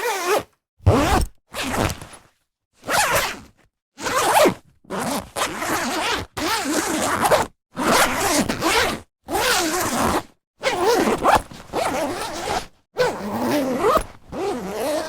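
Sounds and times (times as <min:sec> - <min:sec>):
zipper being pulled: 0:00.0 - 0:02.2, 0:02.8 - 0:15.0.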